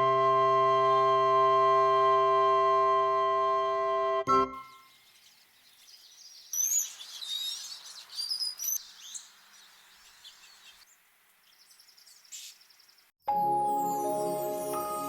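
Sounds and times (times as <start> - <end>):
fast faint bird trill: 4.8 - 13.1
songbirds chirping: 4.8 - 13.2
background hiss: 4.9 - 13.1.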